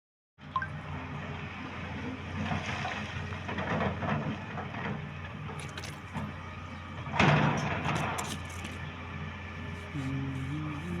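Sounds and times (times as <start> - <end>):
excavator diesel engine droning: 0.4 - 11.0.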